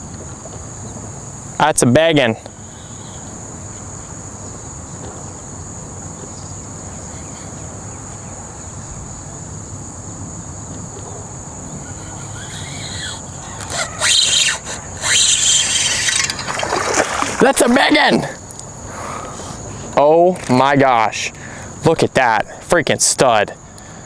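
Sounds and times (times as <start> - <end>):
insects buzzing: 0.0 - 24.0
loud splashing: 13.8 - 18.5.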